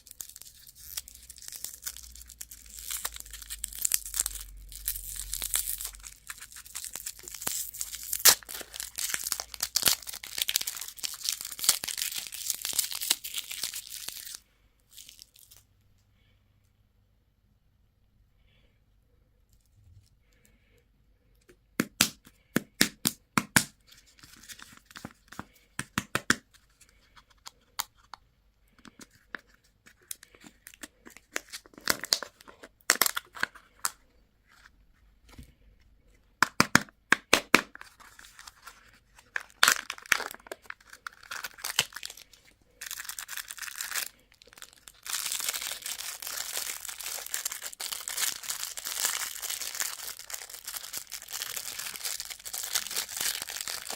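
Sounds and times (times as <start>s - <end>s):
wrapper crinkling and tearing: 0.0s - 15.7s, 28.8s - 34.0s, 37.4s - 53.9s.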